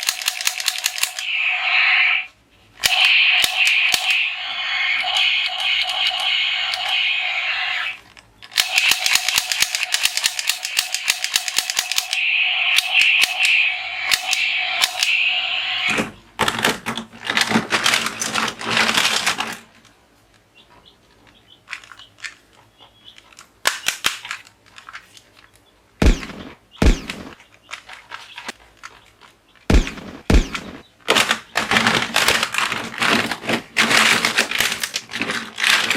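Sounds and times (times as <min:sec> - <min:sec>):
toy gun rapid clicking: 0:00.0 - 0:01.6, 0:02.8 - 0:15.3.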